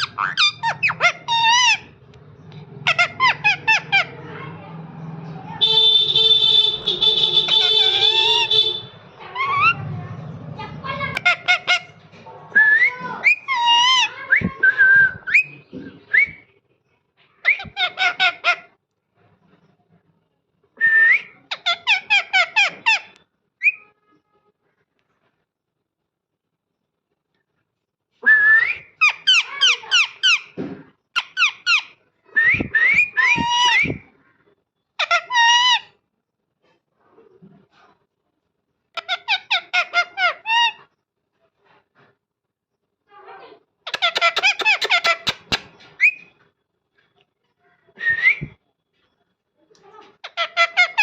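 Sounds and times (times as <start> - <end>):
parrot whistling and chattering: 0.0 - 1.9, 5.6 - 9.8, 11.1 - 16.4, 31.2 - 34.2, 43.9 - 46.4
parrot whistling and chirping: 0.0 - 1.9, 20.8 - 23.9, 31.2 - 34.1, 43.9 - 46.4.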